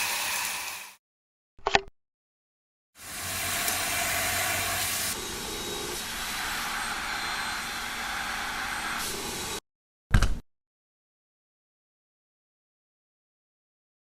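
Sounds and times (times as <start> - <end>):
vacuum cleaner running: 3.0 - 9.6.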